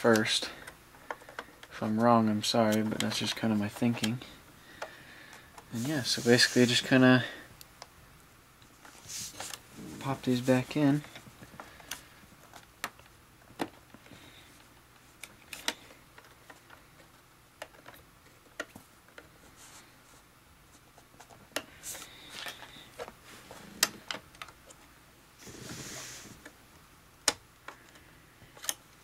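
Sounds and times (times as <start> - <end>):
scraping rustle: 5.7 - 7.0.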